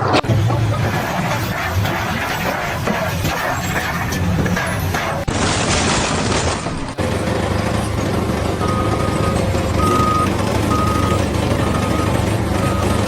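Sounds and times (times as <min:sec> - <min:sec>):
heavy vehicle engine running: 0:00.0 - 0:13.0
reversing alarm beeping: 0:08.5 - 0:13.0.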